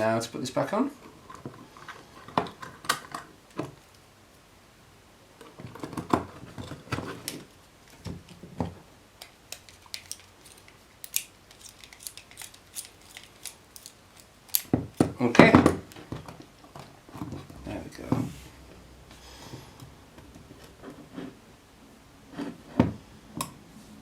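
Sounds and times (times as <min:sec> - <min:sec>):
small metal parts clicking: 0:09.2 - 0:15.0.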